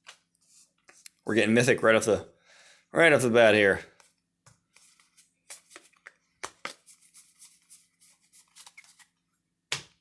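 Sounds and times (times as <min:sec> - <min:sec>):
cards rustling: 0:03.9 - 0:09.2.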